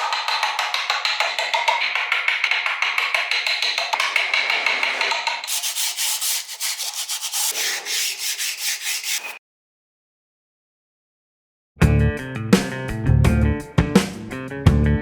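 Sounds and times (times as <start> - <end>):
hand sanding wood: 4.5 - 9.4.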